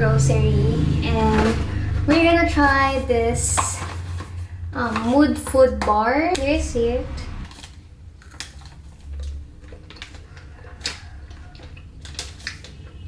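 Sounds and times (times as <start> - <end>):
low hum: 0.0 - 5.2, 6.3 - 7.5
person chewing crunchy snack bar: 7.5 - 13.0.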